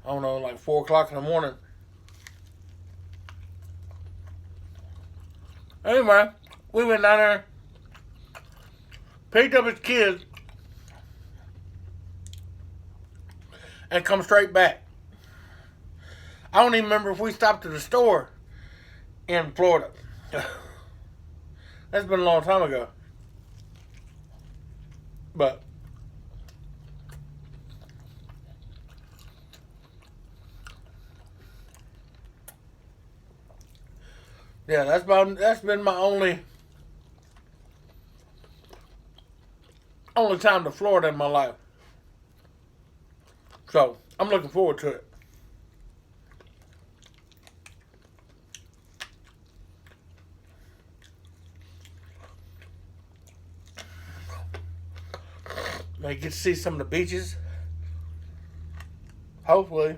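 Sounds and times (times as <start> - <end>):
low steady hum: 0.0 - 59.9
person chewing with mouth clicks: 1.8 - 6.7, 7.5 - 9.3, 10.2 - 13.8, 23.0 - 34.5, 36.4 - 40.2, 41.8 - 44.2, 45.1 - 56.0, 57.8 - 59.4.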